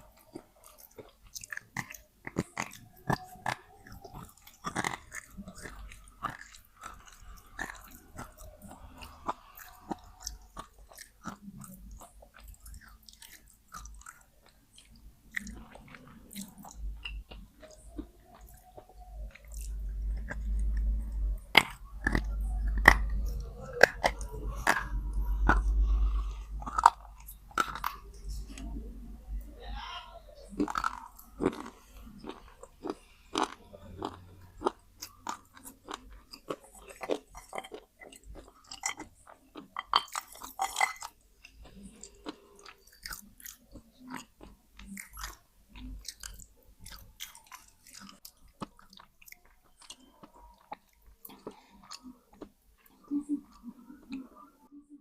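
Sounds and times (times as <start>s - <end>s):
pencils being chewed with crunches: 0.0s - 29.4s, 30.4s - 54.6s
deep rumble: 19.8s - 29.6s.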